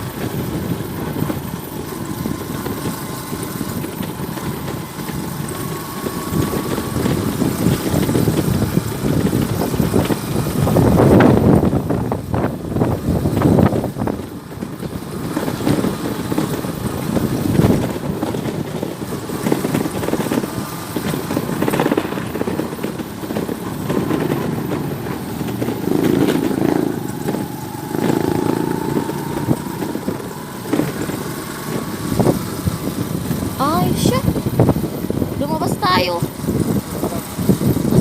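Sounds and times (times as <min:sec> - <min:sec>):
motorcycles: 0:00.0 - 0:38.0
traffic engines and road noise: 0:00.0 - 0:38.0
faint rising whine: 0:21.7 - 0:33.7.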